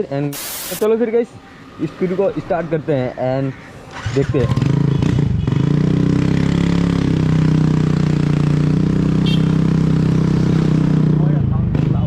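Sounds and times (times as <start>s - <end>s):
scooter engine open exhaust drone: 4.8s - 11.0s.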